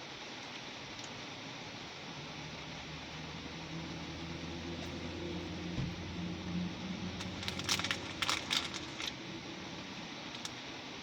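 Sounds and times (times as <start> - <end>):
steady low hum: 0.0 - 11.0
candy crunching: 7.1 - 10.6.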